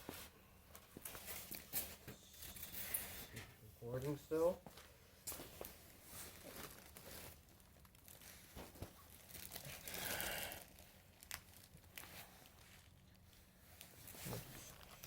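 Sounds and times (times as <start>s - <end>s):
packaging rustling and crinkling: 0.0s - 3.4s, 4.7s - 15.0s.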